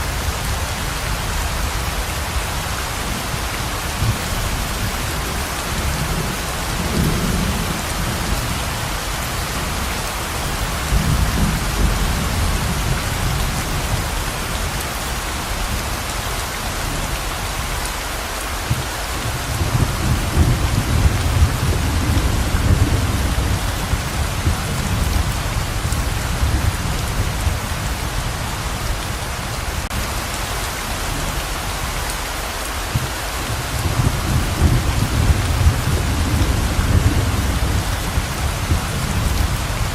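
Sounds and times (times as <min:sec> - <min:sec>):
heavy rain pouring: 0:00.0 - 0:39.9.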